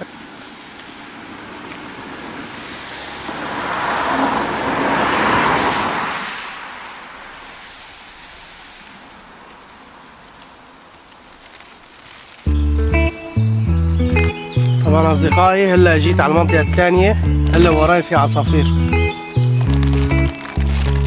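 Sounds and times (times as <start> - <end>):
car passing by: 0.0 - 11.1.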